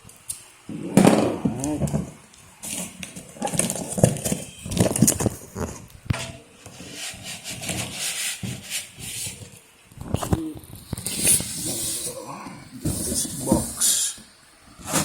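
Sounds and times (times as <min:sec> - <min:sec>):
cardboard rubbing and scraping: 0:01.5 - 0:12.2, 0:12.8 - 0:13.8, 0:14.8 - 0:15.0.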